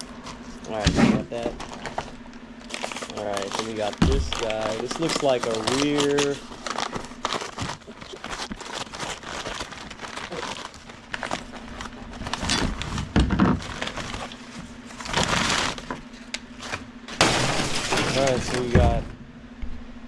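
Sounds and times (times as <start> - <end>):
plastic packaging crinkling: 1.6 - 12.9, 13.6 - 14.5
parts clicking and knocking: 17.1 - 18.9.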